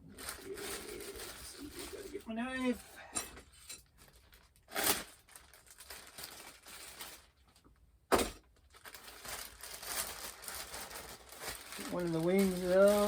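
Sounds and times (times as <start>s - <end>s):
packaging rustling: 0.0s - 2.9s, 3.8s - 7.6s, 8.5s - 13.0s
packaging swishing: 0.1s - 2.8s, 8.8s - 13.0s.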